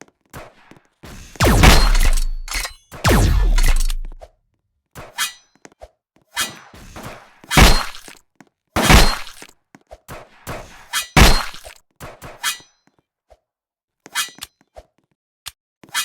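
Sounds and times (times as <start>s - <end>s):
knocks and crashes: 1.4s - 4.2s.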